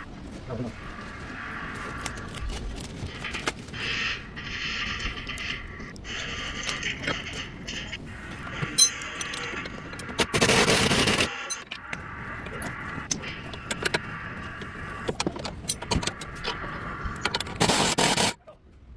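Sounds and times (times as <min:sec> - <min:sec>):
loud burst of noise: 0:00.8 - 0:15.2, 0:15.8 - 0:18.4
metal tools clinking: 0:08.6 - 0:09.7.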